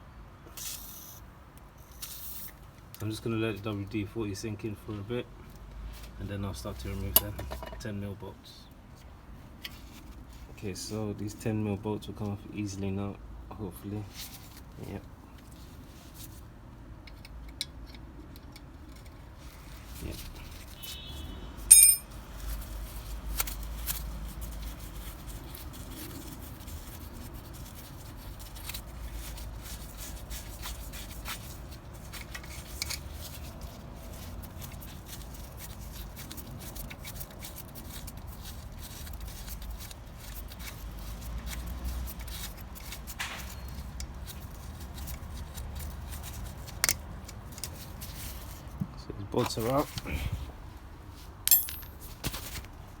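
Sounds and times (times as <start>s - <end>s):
sharp metallic clank: 21.7s - 22.1s, 51.5s - 52.0s.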